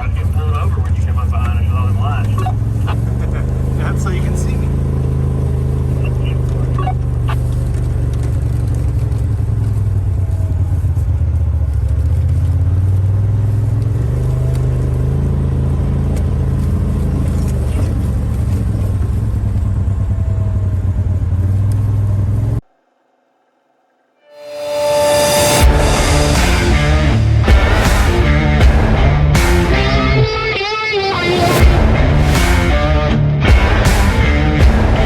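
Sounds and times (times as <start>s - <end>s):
engine running: 0.0s - 22.6s, 24.6s - 35.0s.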